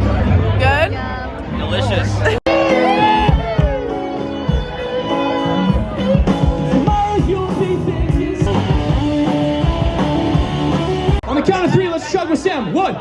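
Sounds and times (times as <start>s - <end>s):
rock music with singing: 2.2s - 11.3s.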